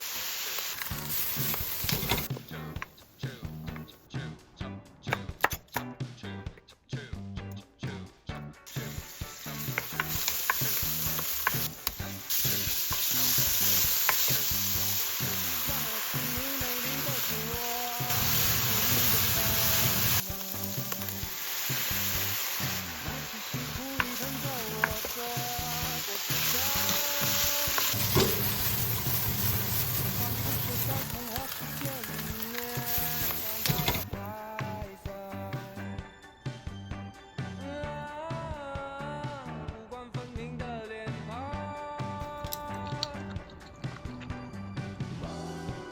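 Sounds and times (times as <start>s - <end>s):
meat sizzling in a hot pan: 0.0s - 2.3s, 8.7s - 34.1s.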